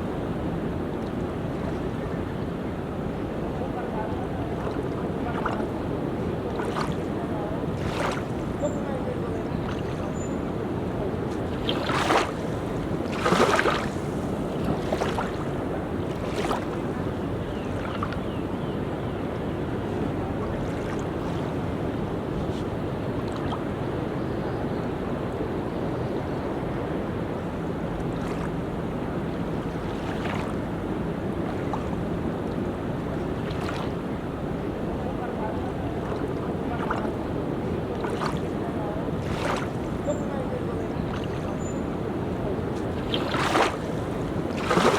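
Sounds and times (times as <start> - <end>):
ocean waves washing onto beach: 0.0 - 44.9
waves breaking with splashes: 0.0 - 44.9.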